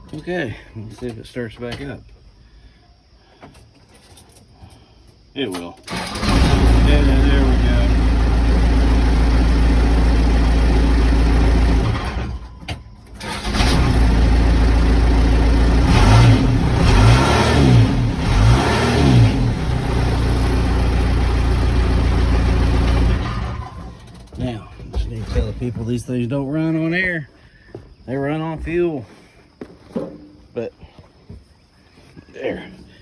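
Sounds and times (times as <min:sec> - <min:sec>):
diesel engine revving and running: 0:05.9 - 0:25.8.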